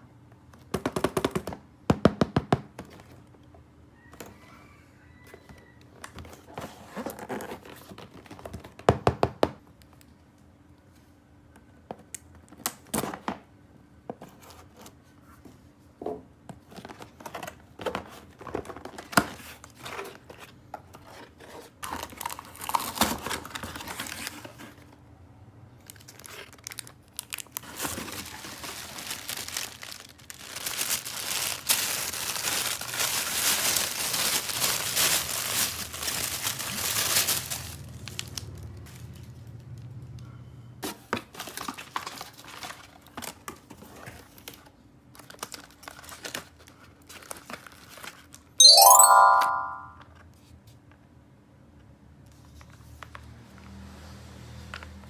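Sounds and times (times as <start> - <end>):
plastic packaging crinkling and tearing: 16.8 - 24.8, 25.8 - 39.2, 41.4 - 43.4, 44.4 - 48.5
plastic wrap crinkling: 25.9 - 38.5.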